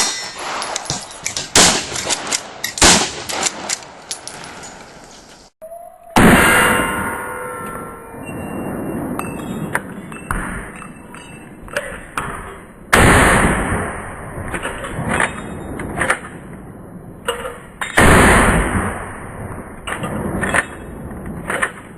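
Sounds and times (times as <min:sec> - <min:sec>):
rifle shots: 0:00.0 - 0:04.0.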